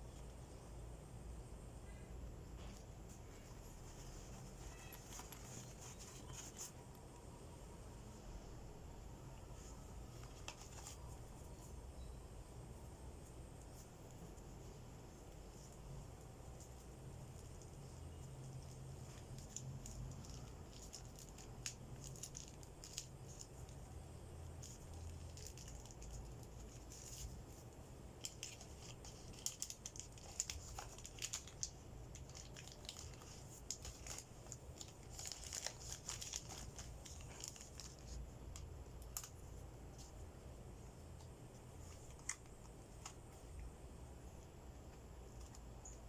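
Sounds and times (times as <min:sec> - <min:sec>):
packaging crinkling and tearing: 0:03.9 - 0:06.8, 0:18.6 - 0:23.8, 0:24.5 - 0:27.6, 0:28.2 - 0:39.6.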